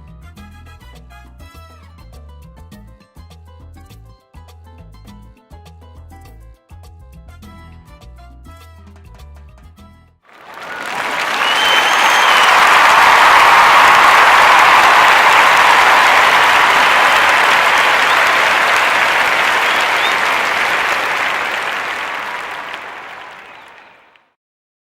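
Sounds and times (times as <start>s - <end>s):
crowd applauding: 10.3s - 24.2s.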